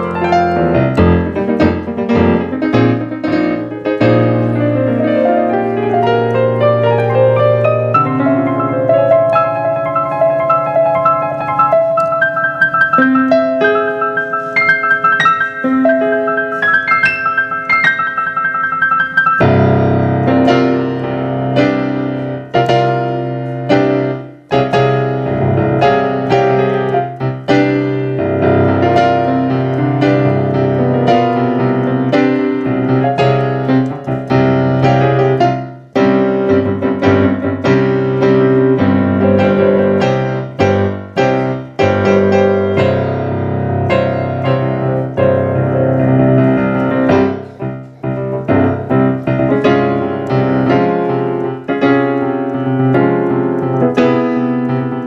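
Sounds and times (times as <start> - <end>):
piano playing: 0.0 - 55.0.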